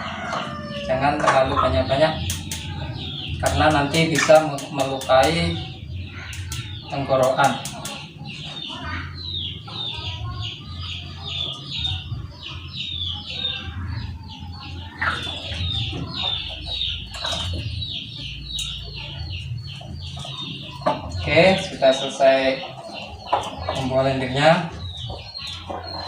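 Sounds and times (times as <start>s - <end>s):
chickens chirping: 0.0s - 26.0s.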